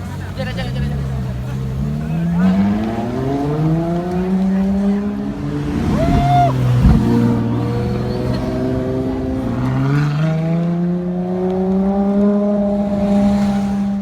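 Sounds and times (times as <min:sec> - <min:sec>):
sports car engine running: 0:00.0 - 0:10.0.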